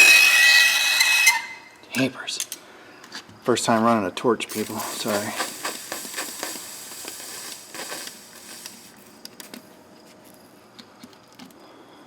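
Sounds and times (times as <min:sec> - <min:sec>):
torch flame hissing: 0:04.5 - 0:09.6.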